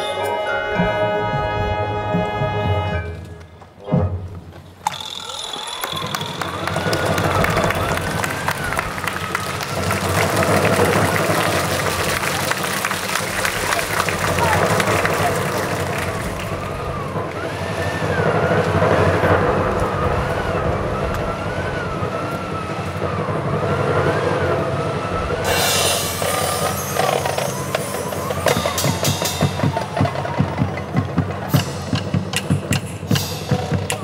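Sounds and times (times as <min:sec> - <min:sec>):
marching band music: 0:00.0 - 0:20.8, 0:21.8 - 0:34.0
drum strokes: 0:00.7 - 0:34.0
cymbal crash: 0:25.4 - 0:30.4.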